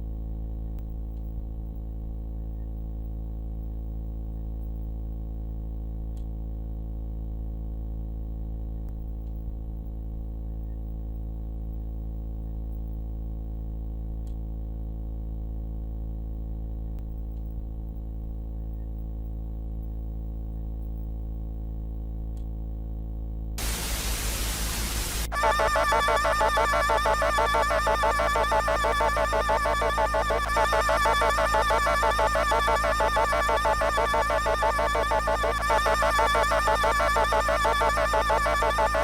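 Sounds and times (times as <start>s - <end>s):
static hiss burst: 23.6s - 28.0s
low electronic drone hum: 23.6s - 39.0s.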